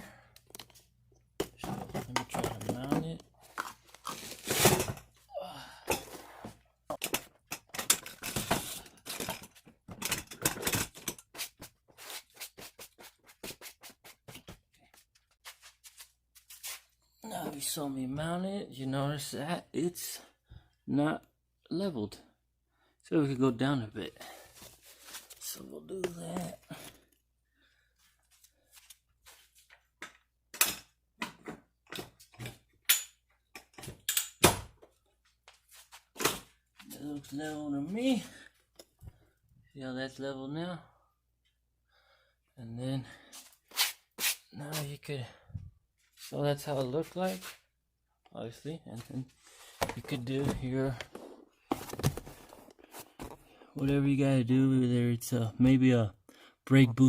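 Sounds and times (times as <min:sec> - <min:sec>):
metal stand clicks and knocks: 0:09.1 - 0:11.3, 0:30.0 - 0:34.7.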